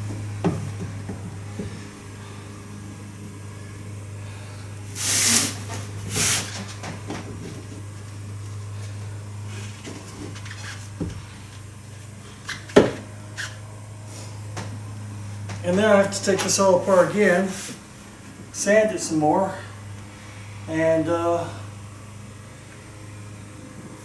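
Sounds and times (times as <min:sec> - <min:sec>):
steady low hum: 0:00.0 - 0:24.0.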